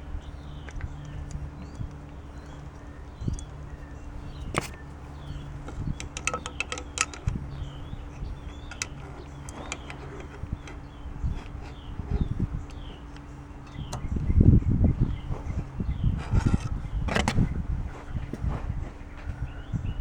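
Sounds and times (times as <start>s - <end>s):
low steady hum: 0.0s - 20.0s
small bird chirping: 0.0s - 20.0s
handling knocks: 4.3s - 19.5s.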